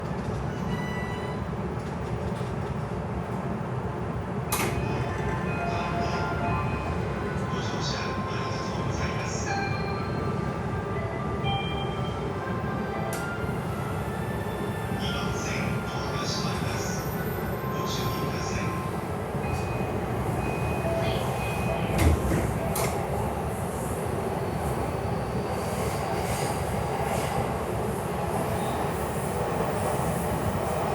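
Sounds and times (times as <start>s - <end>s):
electric train rumble: 0.0s - 30.9s
train wheels rumbling on rail: 18.0s - 30.9s.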